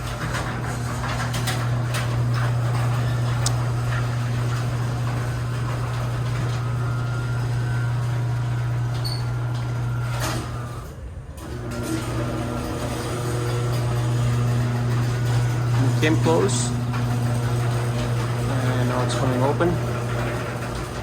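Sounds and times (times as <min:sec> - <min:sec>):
garage door opener motor hum: 0:00.0 - 0:21.0.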